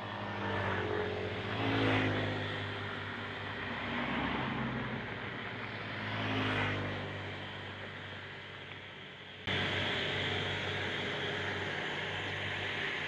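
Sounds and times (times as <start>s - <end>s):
low street hum: 0.0s - 13.0s
car passing by: 0.2s - 8.1s
steady hiss and hum: 8.8s - 13.0s.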